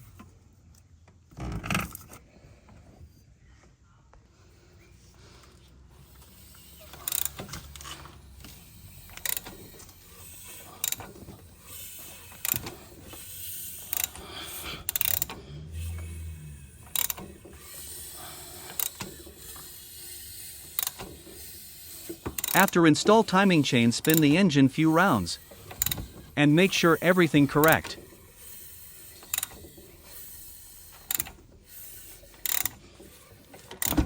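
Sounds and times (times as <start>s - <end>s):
sharp mechanical click: 31.0s - 31.4s.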